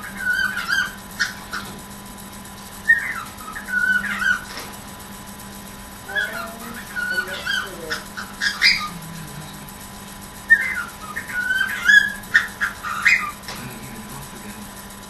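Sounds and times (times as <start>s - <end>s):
cockatiel chirping and whistling: 0.0s - 1.7s, 2.8s - 4.5s, 6.2s - 8.9s, 10.5s - 13.4s.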